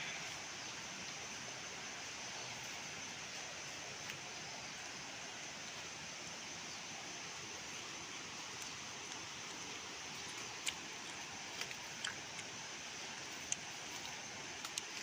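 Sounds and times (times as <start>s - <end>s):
sharp clicks and snaps: 13.4s - 15.0s.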